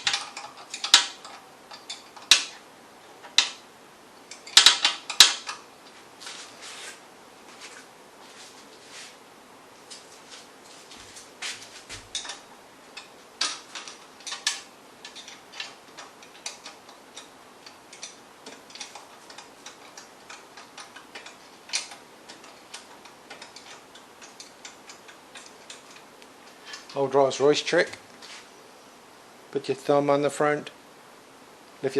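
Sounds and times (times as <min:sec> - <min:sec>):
loud metal clicks: 0:00.0 - 0:02.6, 0:03.2 - 0:03.6, 0:04.3 - 0:05.7, 0:12.1 - 0:27.0.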